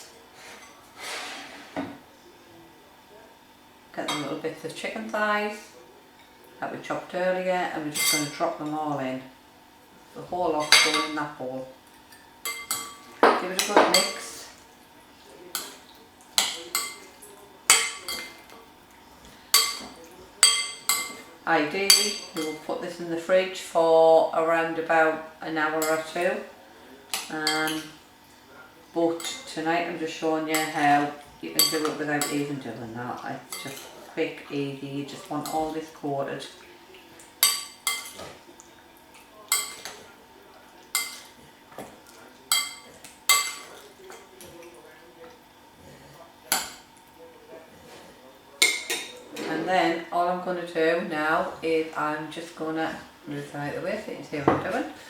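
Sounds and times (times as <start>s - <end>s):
spoon clinking against bowl: 8.0s - 8.4s, 12.1s - 14.2s, 16.4s - 17.1s, 17.7s - 18.4s, 19.5s - 21.2s, 31.6s - 32.5s, 37.4s - 38.2s, 39.5s - 40.0s, 40.9s - 41.9s, 42.5s - 43.9s, 48.6s - 49.2s.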